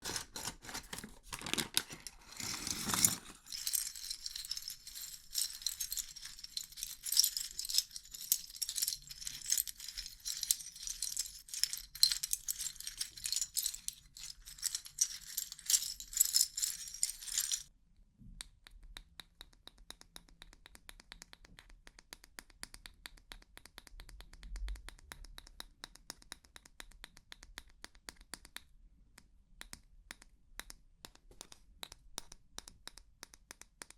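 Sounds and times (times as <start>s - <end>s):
plastic keycaps clattering: 0.0s - 17.6s.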